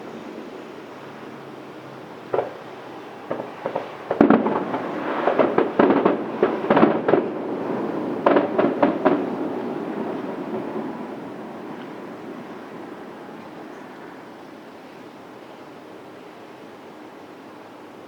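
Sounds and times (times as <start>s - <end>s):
fireworks pops and crackles: 2.3s - 12.7s
fireworks bangs: 2.3s - 14.2s.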